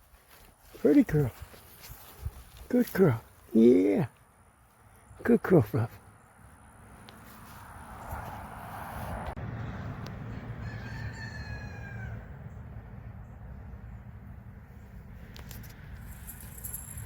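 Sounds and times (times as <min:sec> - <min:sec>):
rooster crowing: 0:09.7 - 0:12.5.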